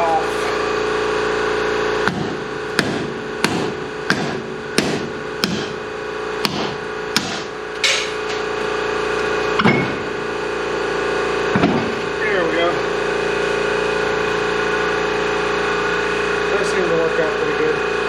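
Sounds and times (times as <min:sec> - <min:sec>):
steady hum: 0:00.0 - 0:18.0
hammer striking metal part: 0:02.0 - 0:05.8, 0:06.4 - 0:08.4, 0:09.6 - 0:10.0.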